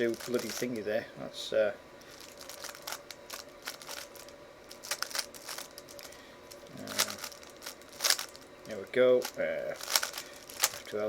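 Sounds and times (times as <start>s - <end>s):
puzzle cube plastic clicks: 9.2s - 10.9s.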